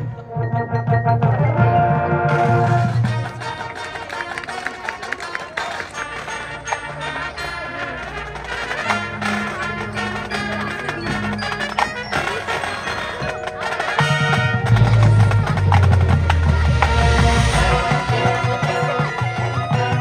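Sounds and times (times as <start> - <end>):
marching band music: 2.2 - 20.0
deep bass notes: 14.6 - 18.6.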